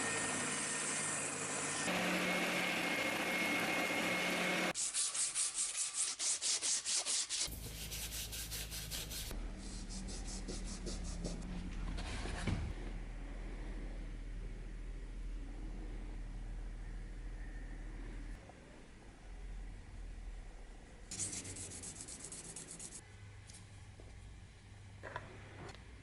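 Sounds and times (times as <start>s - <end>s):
sanding wood handle: 4.8s - 9.3s.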